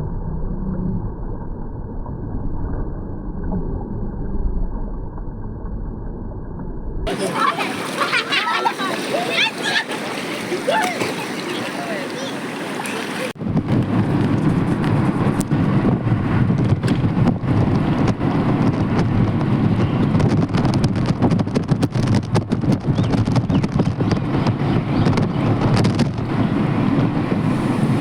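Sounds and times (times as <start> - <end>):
wind buffeting microphone: 7.1 - 28.0.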